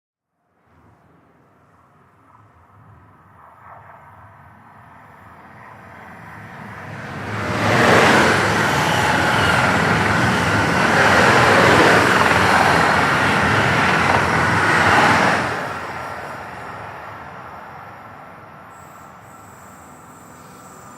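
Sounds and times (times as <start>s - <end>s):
train passing: 1.0s - 20.9s.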